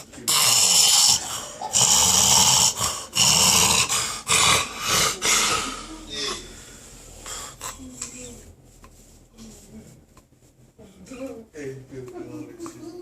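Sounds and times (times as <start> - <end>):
person snoring hard: 0.3 - 6.4.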